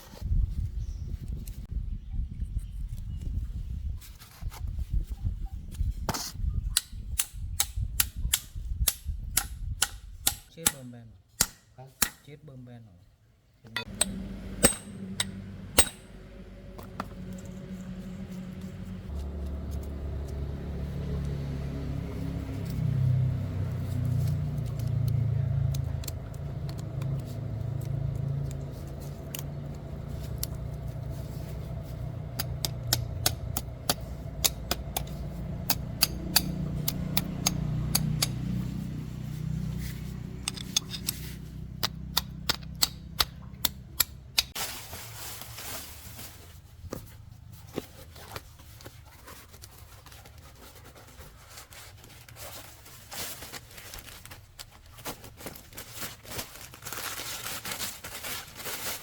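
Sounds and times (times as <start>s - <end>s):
sharp metallic clicks: 6.8s - 12.3s, 13.7s - 16.3s, 32.4s - 38.4s, 40.4s - 44.6s
truck engine rumbling: 13.7s - 44.6s.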